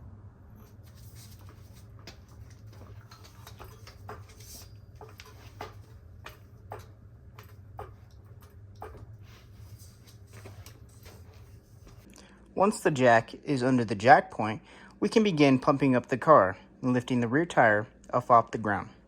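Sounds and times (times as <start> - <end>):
steady low hum: 0.0 - 18.1.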